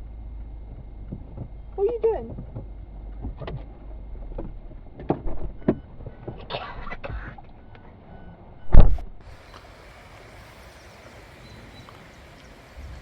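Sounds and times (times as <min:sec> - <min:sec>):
car cabin rumble: 0:00.0 - 0:09.4
loud thump: 0:05.0 - 0:05.8, 0:08.7 - 0:09.2.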